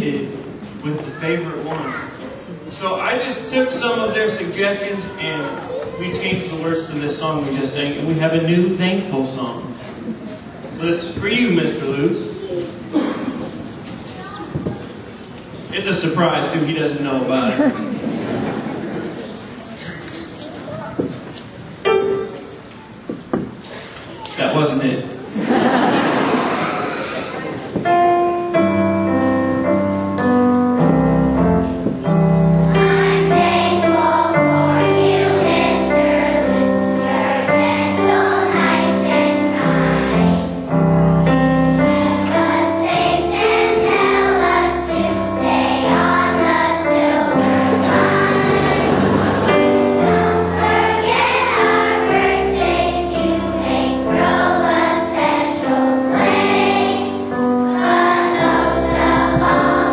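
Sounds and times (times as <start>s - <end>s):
children's choir singing: 21.7s - 22.8s, 25.3s - 59.9s
instrumental accompaniment: 21.8s - 23.1s, 27.7s - 59.9s.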